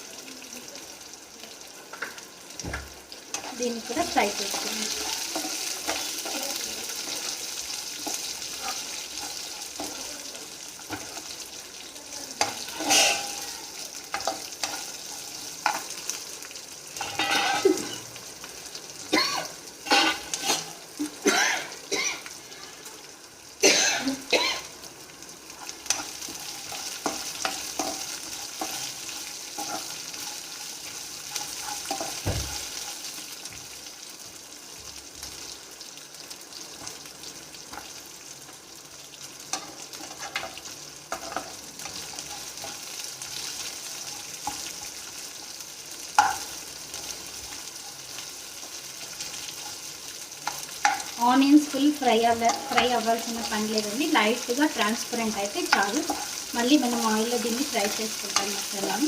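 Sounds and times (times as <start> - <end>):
onions sizzling in oil: 0.0 - 59.0
spatula scraping pan: 3.3 - 10.1, 12.4 - 16.2, 17.0 - 18.1, 19.8 - 20.8, 25.6 - 33.3, 39.5 - 45.6, 52.2 - 59.0.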